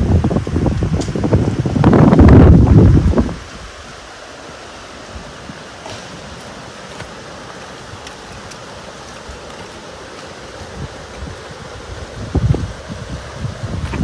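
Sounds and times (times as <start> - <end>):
wind rumble on microphone: 0.0 - 4.1, 10.5 - 14.0
water rushing: 0.0 - 14.0.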